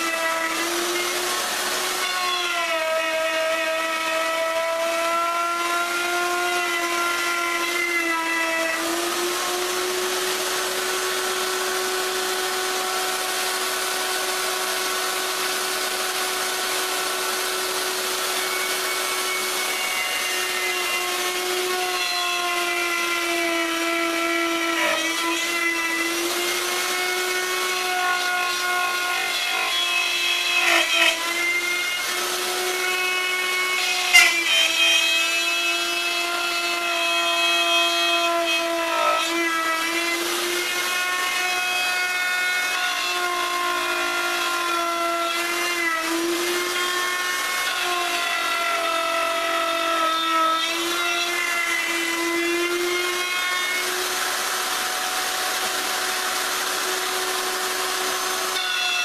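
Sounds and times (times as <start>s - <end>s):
router cutting wood: 0.0s - 59.0s.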